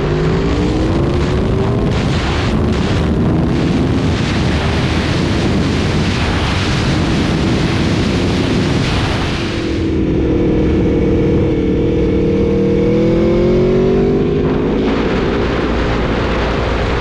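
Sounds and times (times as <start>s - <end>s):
wind rush on microphone: 0.0s - 17.0s
faint motorcycle engine: 9.5s - 17.0s.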